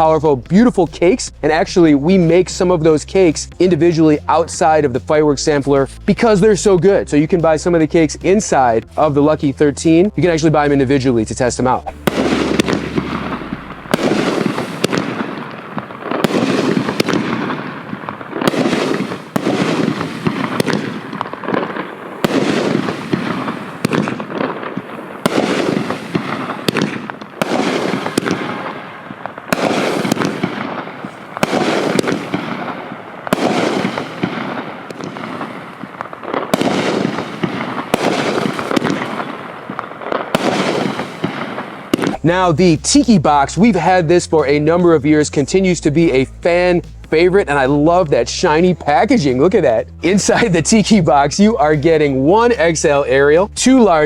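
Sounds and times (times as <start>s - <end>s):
fireworks launching and bursting: 0.0s - 54.0s
crackling firework tails: 11.7s - 43.0s.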